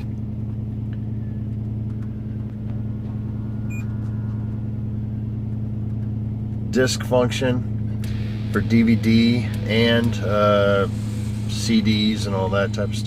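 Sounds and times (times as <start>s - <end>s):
pickup engine idling: 0.0s - 13.0s
short electronic beep: 3.6s - 4.1s.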